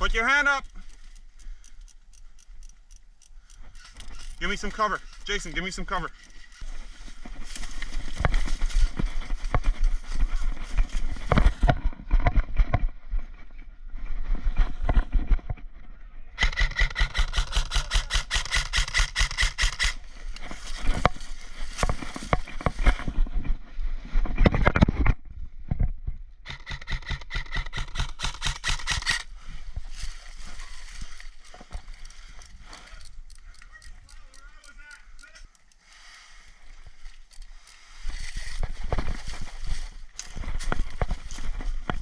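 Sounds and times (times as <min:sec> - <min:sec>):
airsoft rifle clicking: 0:00.4 - 0:05.3, 0:16.4 - 0:20.0, 0:26.5 - 0:29.3, 0:31.5 - 0:35.9
airsoft rifle firing full auto: 0:16.4 - 0:20.0, 0:26.5 - 0:29.2.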